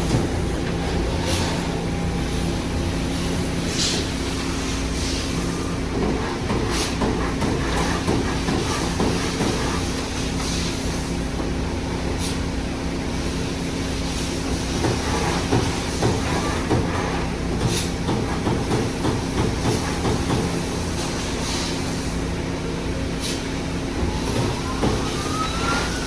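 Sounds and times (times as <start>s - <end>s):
air hisses: 3.2s - 5.7s.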